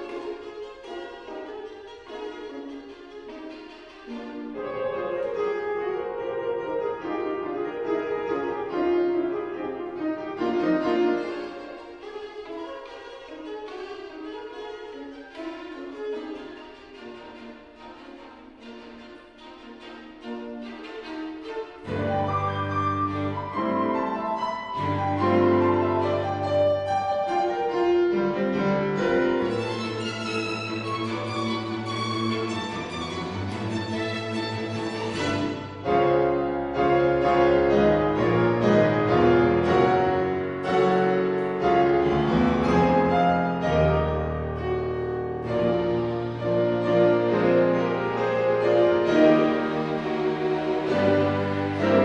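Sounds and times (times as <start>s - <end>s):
piano: 0.0s - 52.0s
strings playing sustained chords: 17.3s - 52.0s.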